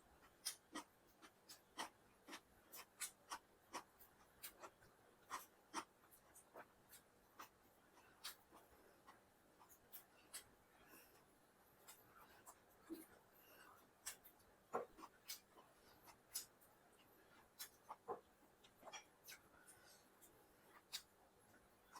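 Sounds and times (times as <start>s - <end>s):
mouth clicks and smacks chewing: 0.1s - 21.9s.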